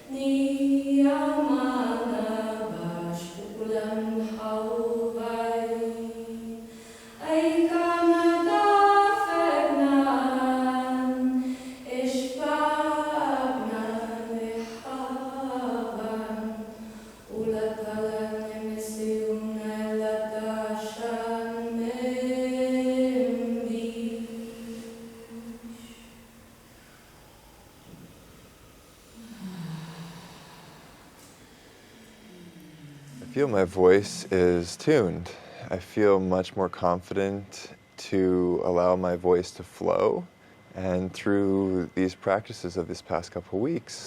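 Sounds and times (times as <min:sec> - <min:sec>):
voices chanting held tones: 0:00.0 - 0:27.1, 0:29.1 - 0:35.4.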